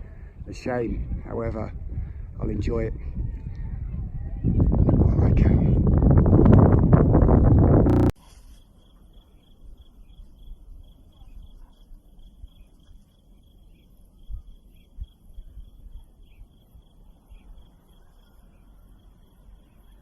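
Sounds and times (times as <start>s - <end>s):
low rumbling: 6.2s - 8.2s
low thumps: 7.0s - 8.1s
insect chirping: 7.9s - 20.0s.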